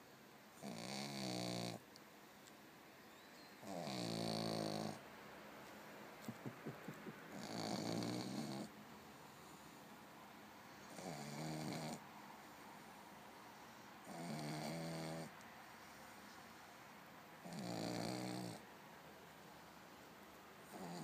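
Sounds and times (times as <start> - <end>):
dog snoring: 0.6 - 1.8, 3.6 - 5.0, 7.3 - 8.7, 10.8 - 12.0, 14.0 - 15.3, 17.4 - 18.6, 20.7 - 21.0.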